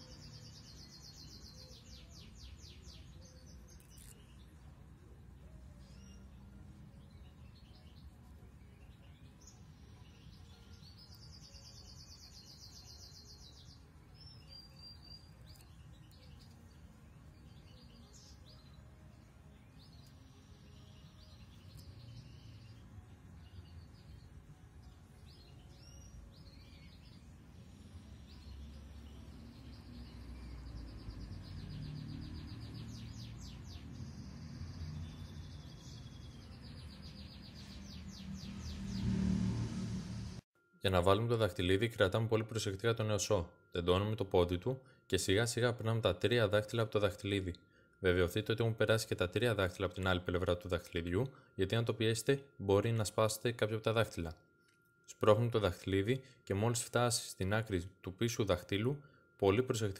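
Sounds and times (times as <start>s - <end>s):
bird trill: 0.0s - 4.6s, 5.8s - 39.1s
cage birds chirping: 0.0s - 59.9s.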